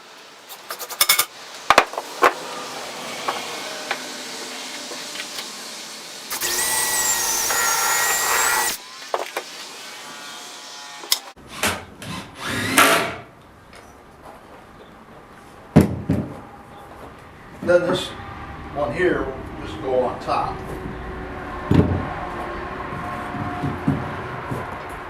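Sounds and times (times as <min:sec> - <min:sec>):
lumber scraping: 0:01.8 - 0:05.6
power drill driving screw into wood: 0:06.3 - 0:09.6, 0:11.0 - 0:13.2.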